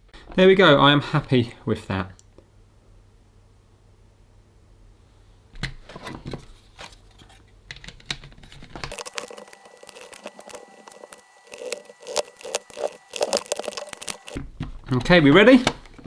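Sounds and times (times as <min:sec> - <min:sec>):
plastic device clicking: 0:05.6 - 0:16.0
tape rustling: 0:06.0 - 0:16.0.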